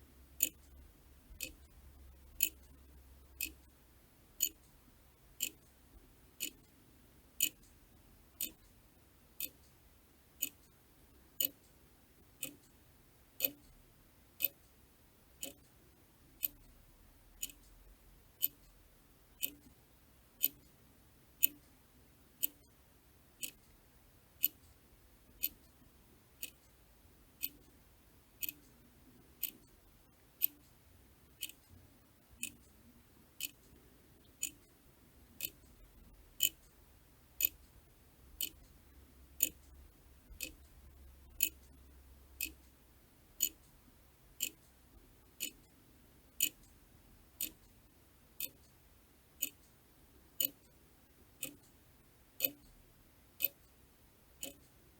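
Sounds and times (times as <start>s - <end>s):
clock ticking: 0.4s - 2.8s, 3.4s - 3.8s, 4.4s - 4.8s, 5.4s - 5.8s, 6.4s - 6.8s, 7.4s - 7.8s, 8.4s - 8.8s, 9.4s - 9.7s, 10.4s - 10.8s, 11.4s - 11.8s, 12.4s - 12.8s, 13.4s - 13.8s, 14.4s - 14.7s, 15.4s - 15.7s, 16.4s - 16.8s, 17.4s - 17.8s, 18.4s - 18.8s, 19.4s - 19.8s, 20.4s - 20.8s, 21.4s - 21.8s, 22.4s - 22.8s, 23.4s - 23.7s, 24.4s - 25.8s, 26.4s - 26.7s, 27.4s - 27.8s, 28.4s - 28.8s, 29.4s - 29.8s, 30.4s - 30.8s, 31.4s - 31.8s, 32.4s - 32.8s, 33.4s - 36.8s, 37.4s - 42.8s, 43.4s - 46.8s, 47.4s - 48.8s, 49.4s - 50.8s, 51.4s - 51.8s, 52.4s - 52.8s, 53.4s - 53.8s, 54.4s - 54.8s.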